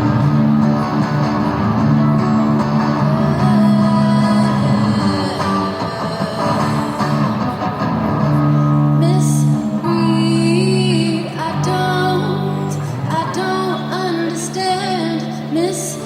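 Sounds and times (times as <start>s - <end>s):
held guitar chords: 0.0s - 16.0s
woman singing: 2.6s - 7.6s, 9.0s - 16.0s.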